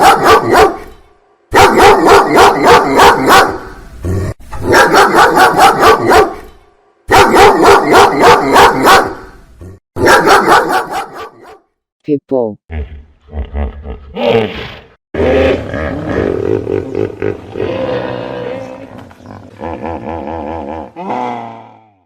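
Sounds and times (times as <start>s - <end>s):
dog barking rapidly: 0.0s - 3.7s, 4.6s - 6.4s, 7.1s - 9.3s, 10.0s - 11.7s.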